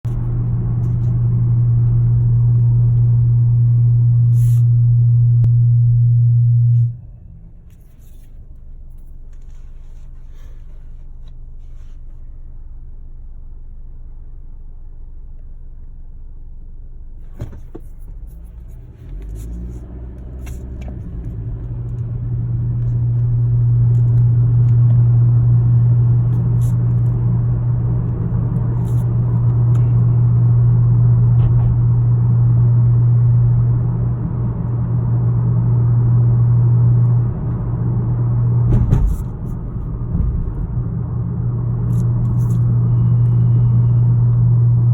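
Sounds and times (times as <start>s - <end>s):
car engine humming: 0.0s - 44.9s.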